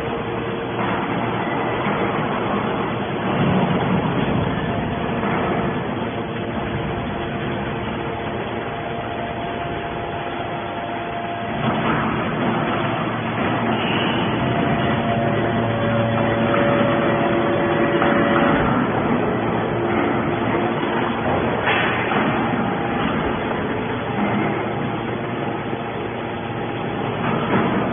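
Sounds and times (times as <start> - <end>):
humming pump tones: 0.0 - 27.9
hydraulic baler machine drone: 0.0 - 27.9.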